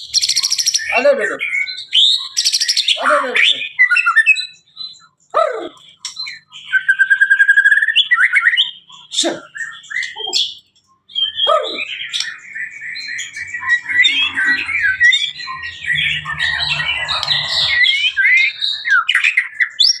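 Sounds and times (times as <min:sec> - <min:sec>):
bird singing varied whistles: 0:00.0 - 0:03.0, 0:03.6 - 0:05.2, 0:06.0 - 0:16.0.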